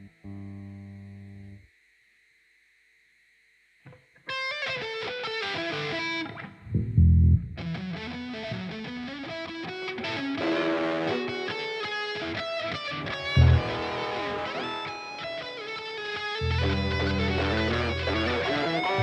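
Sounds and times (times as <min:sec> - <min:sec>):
electric guitar music: 0:04.2 - 0:19.0.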